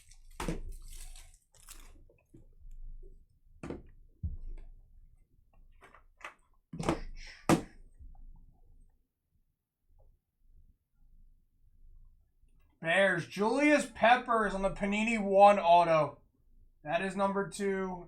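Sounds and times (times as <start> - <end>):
rustling of cards: 0.0 - 2.5.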